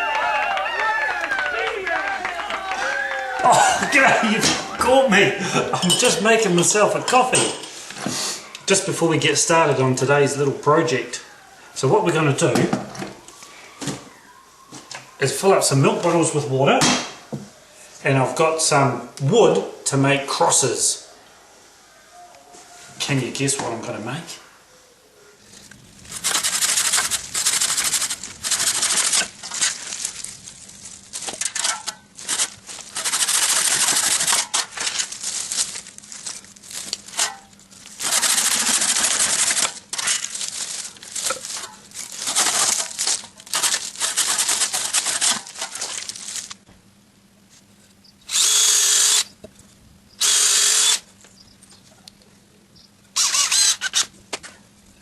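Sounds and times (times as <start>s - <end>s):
power tool cutting wood: 48.3s - 49.3s, 50.2s - 51.0s, 53.2s - 54.1s.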